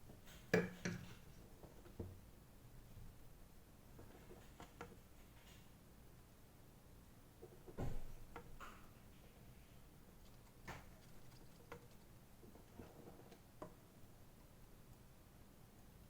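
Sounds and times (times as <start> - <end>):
faint clicks and taps: 10.1 - 15.1.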